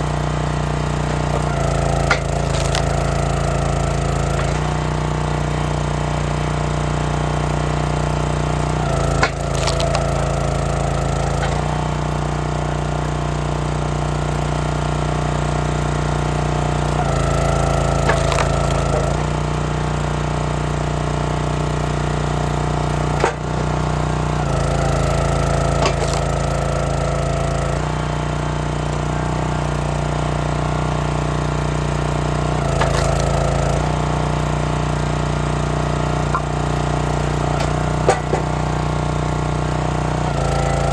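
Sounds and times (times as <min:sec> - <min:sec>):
log splitter engine running: 0:00.0 - 0:40.9
wood splitting cracks: 0:00.5 - 0:05.7, 0:08.4 - 0:12.3, 0:16.8 - 0:19.8, 0:22.8 - 0:27.3, 0:32.3 - 0:34.0, 0:35.6 - 0:39.2.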